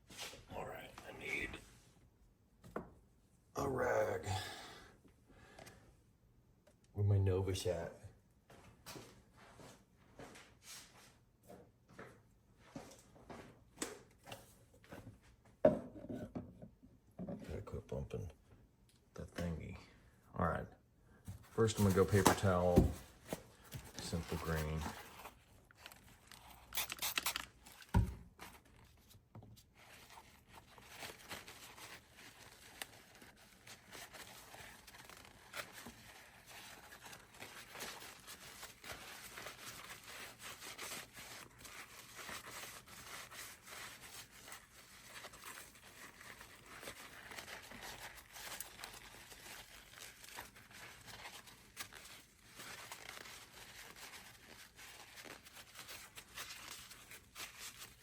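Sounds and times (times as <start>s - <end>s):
paper towel rustling: 21.3s - 58.0s.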